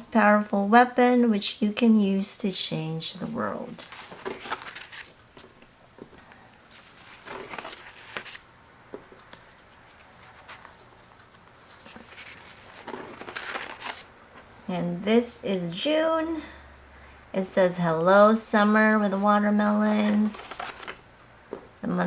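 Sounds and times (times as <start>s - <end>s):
paper pages turning: 3.8s - 8.5s, 9.1s - 14.5s, 19.9s - 21.0s.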